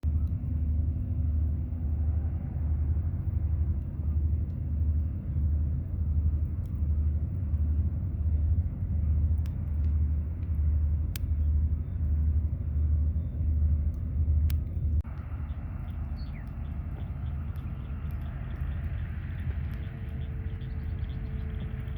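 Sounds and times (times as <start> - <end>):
campfire popping: 0.1 - 21.9
towboat diesel engine rumble: 0.1 - 21.9.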